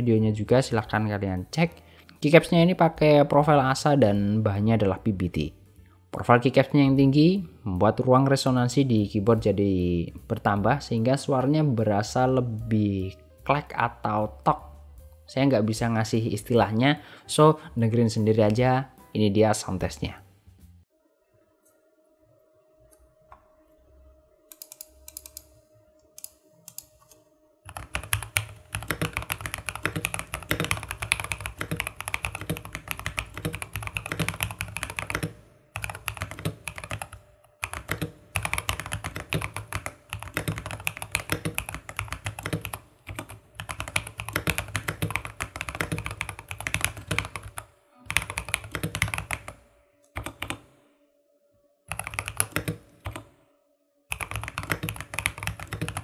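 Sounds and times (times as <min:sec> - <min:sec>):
mechanical keyboard typing: 0:24.5 - 0:25.4, 0:27.7 - 0:49.6, 0:50.2 - 0:50.6, 0:51.9 - 0:53.3, 0:54.1 - 0:56.0.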